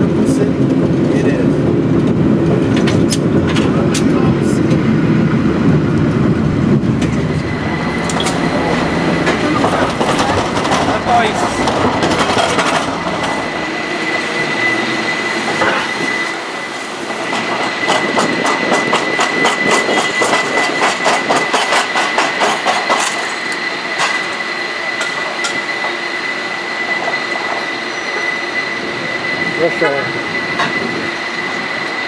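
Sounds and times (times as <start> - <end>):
rail car high whine: 0.0 - 32.0
wheels clicking over rail joints: 8.0 - 13.5, 17.3 - 24.4.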